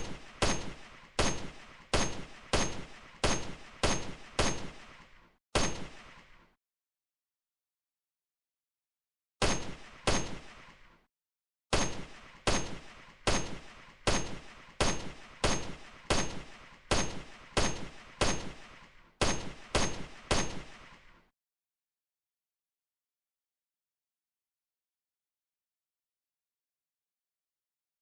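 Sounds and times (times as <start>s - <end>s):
rifle firing single shots: 0.0s - 6.2s, 9.4s - 10.7s, 11.8s - 21.1s.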